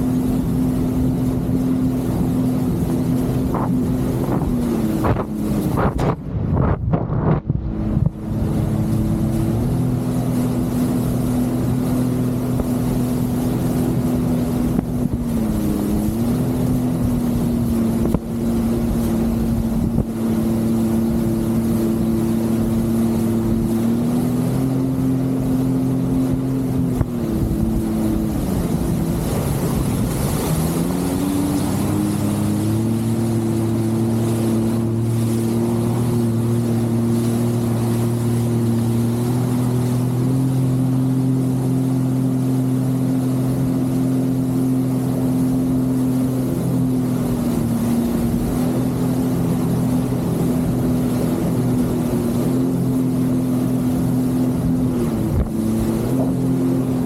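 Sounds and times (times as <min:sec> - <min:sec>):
jet ski engine running: 0:00.0 - 0:57.0
wind on microphone: 0:00.0 - 0:57.0.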